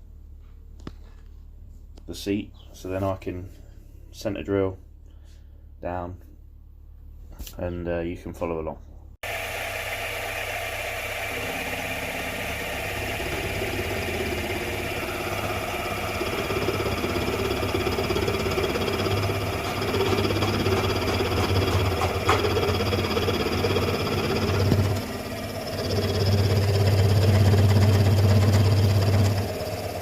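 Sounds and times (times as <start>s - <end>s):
milling machine cutting metal: 9.3s - 30.0s.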